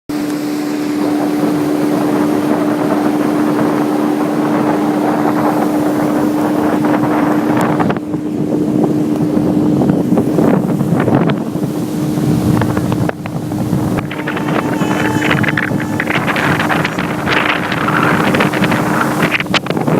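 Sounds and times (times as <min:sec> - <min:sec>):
motorboat engine running: 0:00.1 - 0:19.9
dense rushing noise: 0:13.5 - 0:19.5.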